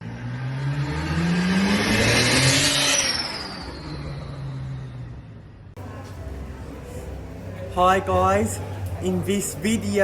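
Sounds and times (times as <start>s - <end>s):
car engine revving: 0.0s - 5.7s.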